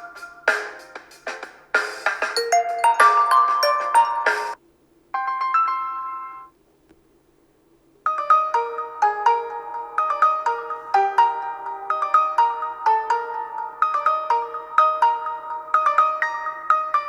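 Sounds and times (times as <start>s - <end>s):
ringtone melody: 2.4s - 4.6s
short ringtone chord: 2.4s - 4.6s.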